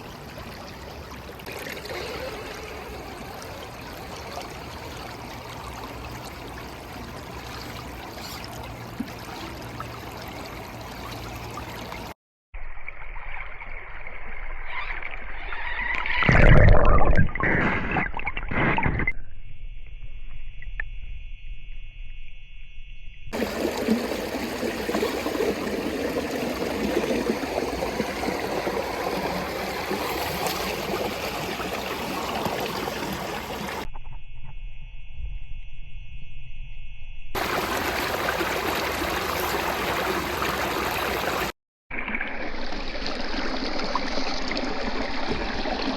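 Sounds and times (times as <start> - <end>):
creek water trickling: 0.0 - 16.4, 23.4 - 33.9, 37.4 - 45.9.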